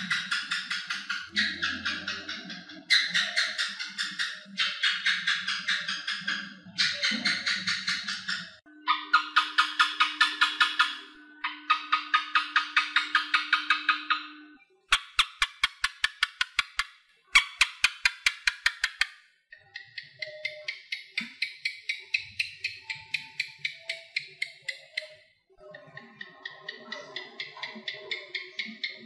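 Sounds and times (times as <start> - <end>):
gecko chirping clicks: 14.9 - 25.3, 25.9 - 29.0.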